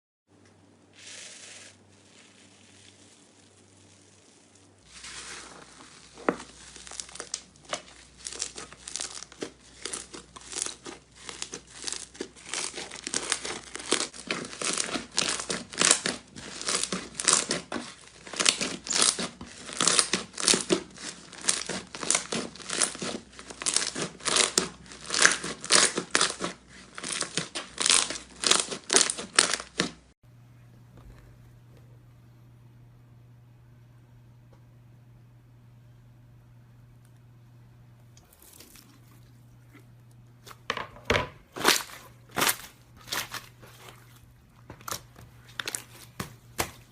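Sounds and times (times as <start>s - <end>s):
slime crackling and crinkling: 1.0s - 30.1s, 38.2s - 40.7s, 41.4s - 46.9s
faint hum: 30.2s - 46.9s.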